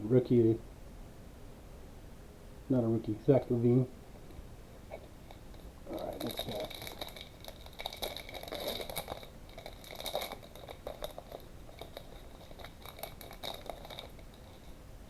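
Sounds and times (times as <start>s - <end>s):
wrapper crinkling and tearing: 5.3s - 14.8s.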